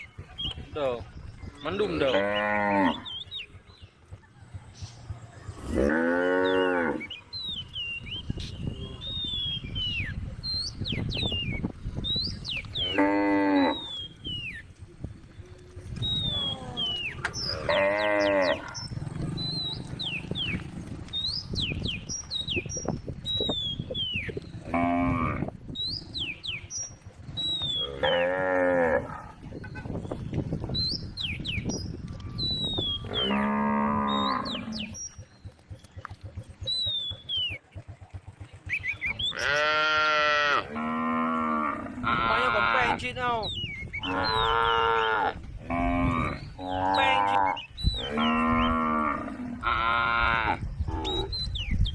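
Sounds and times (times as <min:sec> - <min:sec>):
small birds chirping: 0:00.0 - 0:51.9
cows mooing: 0:01.5 - 0:03.2, 0:05.4 - 0:07.3, 0:12.7 - 0:14.2, 0:15.3 - 0:21.0, 0:24.3 - 0:26.4, 0:27.6 - 0:29.5, 0:32.8 - 0:35.2, 0:39.2 - 0:43.0, 0:44.0 - 0:51.5.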